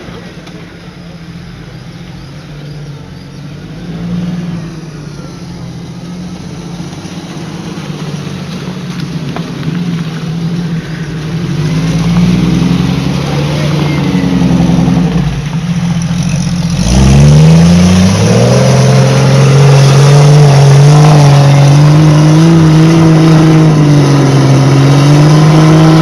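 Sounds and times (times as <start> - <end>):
off-road vehicle engine running: 0.0 - 26.0.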